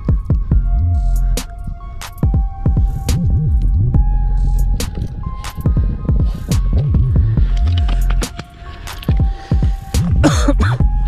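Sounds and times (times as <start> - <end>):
wobbling sliding bass line: 0.4 - 1.4, 2.4 - 8.3.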